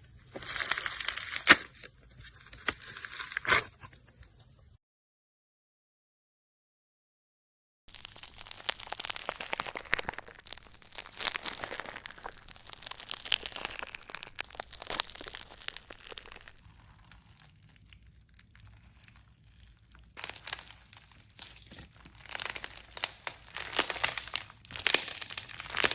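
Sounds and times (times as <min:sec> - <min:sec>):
crinkling and crackling: 0:07.9 - 0:25.9.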